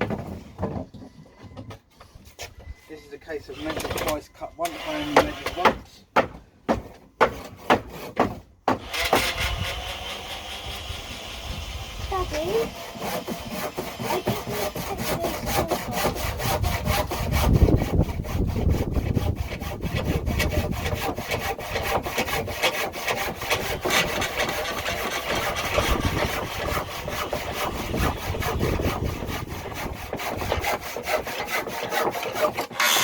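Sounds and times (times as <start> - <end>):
hand saw cutting wood: 3.3 - 6.0, 6.7 - 33.0.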